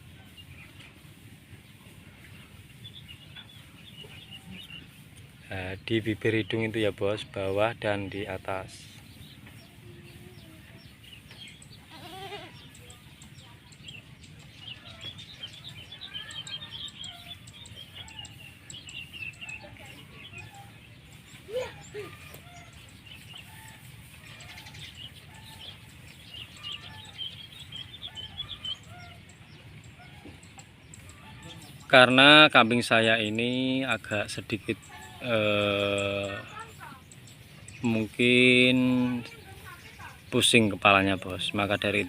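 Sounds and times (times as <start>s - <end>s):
small birds chirping: 0.0s - 42.0s
goat bleating: 11.8s - 12.8s.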